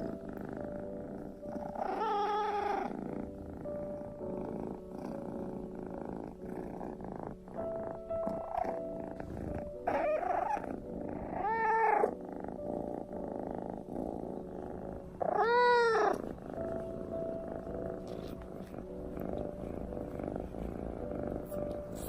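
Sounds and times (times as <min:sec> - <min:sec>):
cat purring: 0:00.0 - 0:22.0
kitten meowing: 0:15.3 - 0:16.2.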